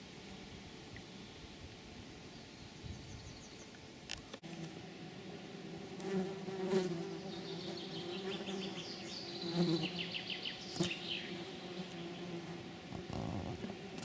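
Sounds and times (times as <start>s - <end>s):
flying insect buzzing: 4.4s - 14.0s.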